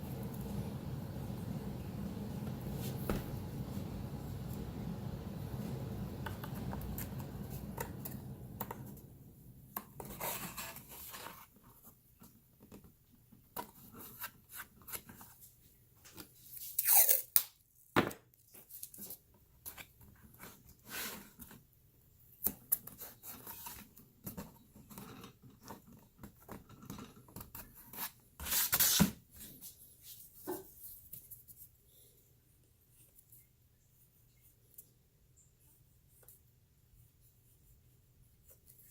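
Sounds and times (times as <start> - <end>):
tape tearing off roll: 28.4 - 29.2.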